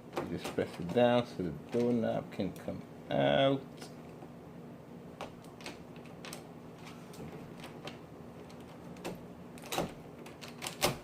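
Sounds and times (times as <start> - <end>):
doorknob clicking and rattling: 7.6 - 11.0.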